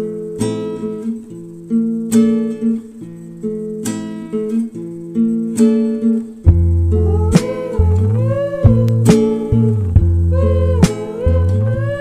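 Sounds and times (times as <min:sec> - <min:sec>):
acoustic guitar strumming: 0:00.0 - 0:12.0
deep bass: 0:06.5 - 0:11.9.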